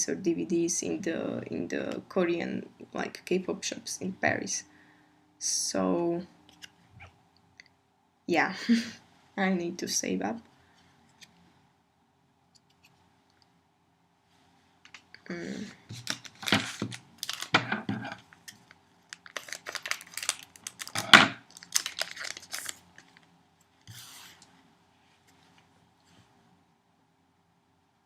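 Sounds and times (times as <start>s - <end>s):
wrapping crackling and rustling: 15.8s - 23.4s.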